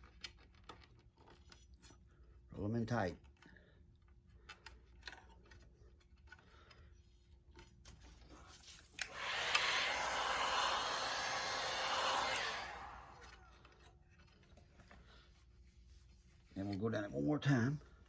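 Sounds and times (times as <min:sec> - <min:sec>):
heat gun blowing hiss: 0:09.0 - 0:13.6.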